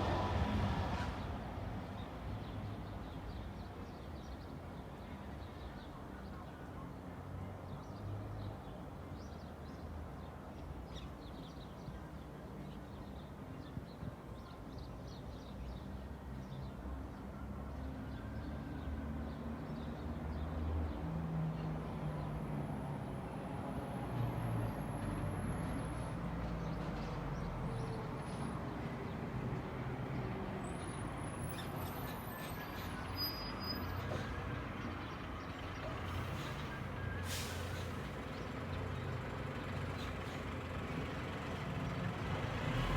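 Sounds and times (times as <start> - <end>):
vehicles passing: 0.0 - 3.2, 16.7 - 42.9.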